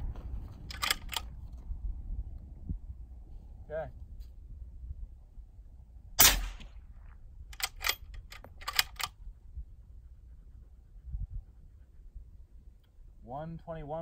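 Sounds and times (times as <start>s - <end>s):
sharp metallic clicks: 0.6s - 1.3s, 7.5s - 9.2s
suppressed rifle shot: 6.2s - 7.2s.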